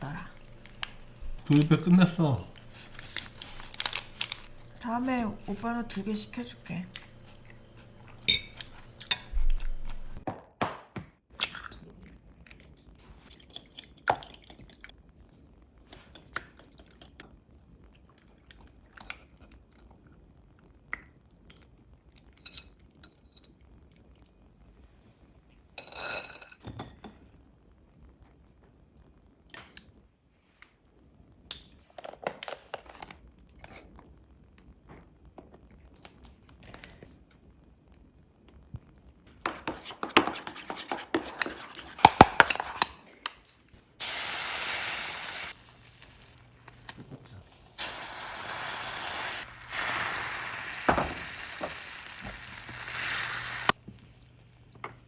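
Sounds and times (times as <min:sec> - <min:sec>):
dishes and utensils clinking: 0:00.0 - 0:10.2.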